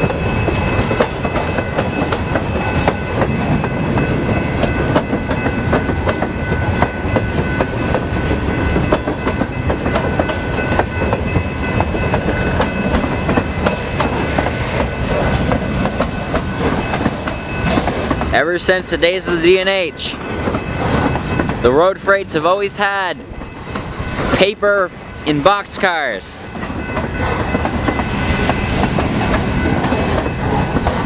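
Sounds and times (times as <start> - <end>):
freight train wheels clacking: 0.0 - 31.0.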